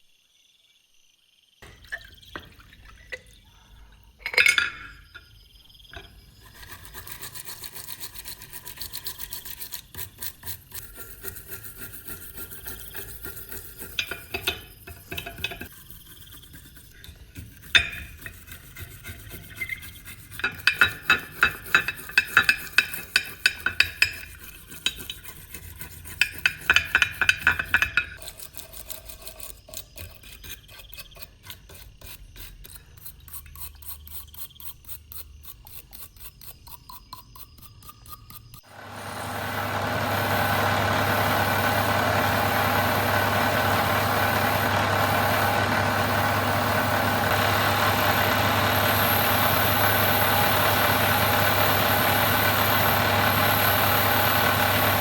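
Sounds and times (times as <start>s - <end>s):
rubbing and scraping on metal: 6.4s - 38.7s.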